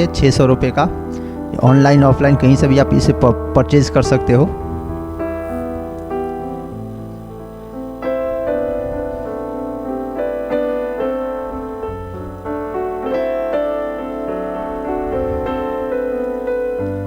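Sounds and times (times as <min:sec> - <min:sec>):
slow gentle piano melody: 0:00.0 - 0:17.0.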